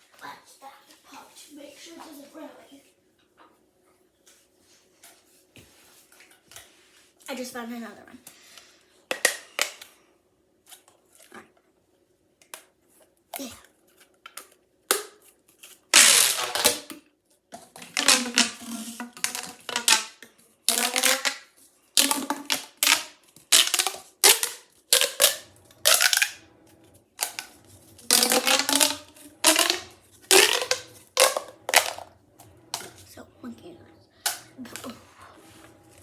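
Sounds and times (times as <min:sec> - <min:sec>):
plastic pop tubes popping: 0:09.1 - 0:09.9, 0:14.3 - 0:15.3, 0:16.0 - 0:17.0, 0:17.6 - 0:26.4, 0:27.2 - 0:32.1, 0:34.2 - 0:34.9.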